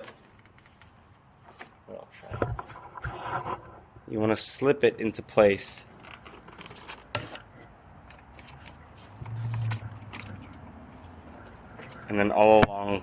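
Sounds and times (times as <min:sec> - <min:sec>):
low hum: 0:09.2 - 0:11.2.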